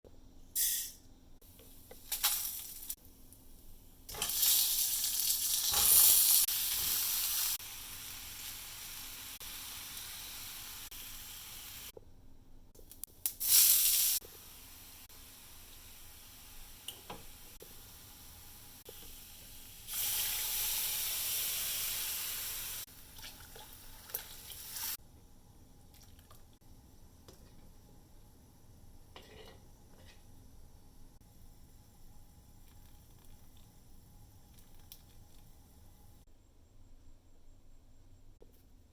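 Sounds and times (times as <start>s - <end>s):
food sizzling in hot oil: 2.0s - 3.0s, 4.1s - 11.9s, 13.2s - 25.0s.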